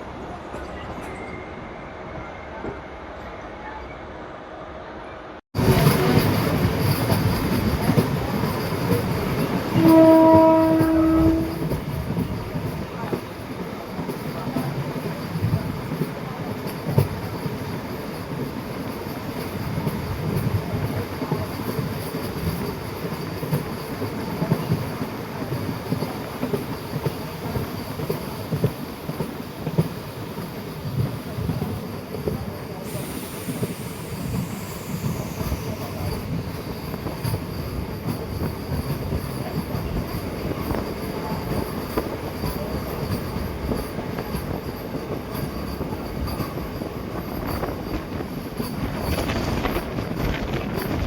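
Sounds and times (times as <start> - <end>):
electric train rail clatter: 5.6 - 51.0
train horn: 9.6 - 11.8.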